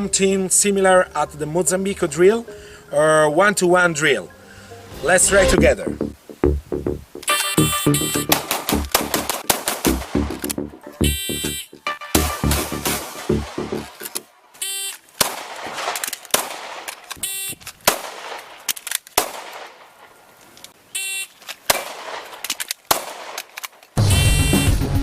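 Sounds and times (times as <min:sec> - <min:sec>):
music with a beat: 0:05.6 - 0:13.9
pistol shots: 0:15.2 - 0:16.9, 0:17.9 - 0:18.5, 0:22.9 - 0:23.4.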